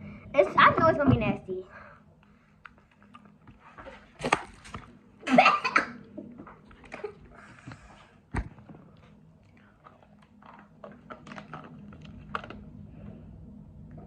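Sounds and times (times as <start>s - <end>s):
chewing clicks and smacks: 2.6s - 3.4s, 8.9s - 12.6s.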